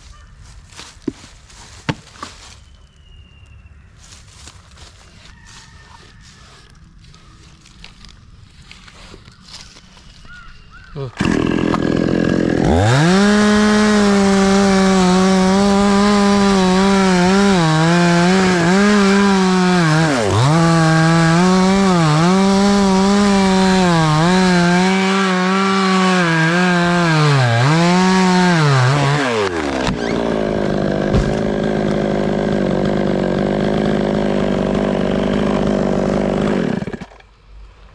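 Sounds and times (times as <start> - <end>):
chainsaw cutting wood: 11.2 - 37.3.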